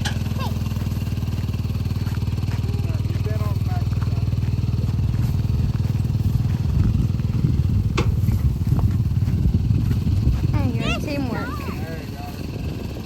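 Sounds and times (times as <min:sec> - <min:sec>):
vehicle engine running: 0:00.0 - 0:13.0.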